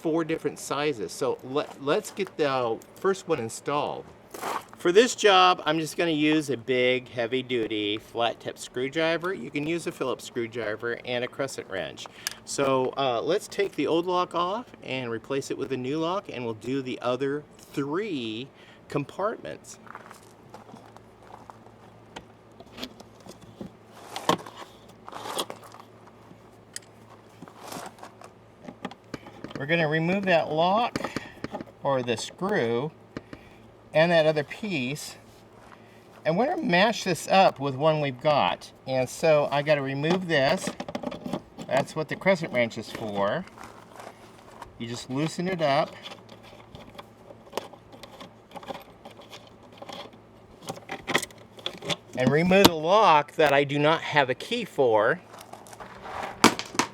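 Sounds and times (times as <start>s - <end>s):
screwdriver clicking and scraping lock: 45.9s - 52.2s.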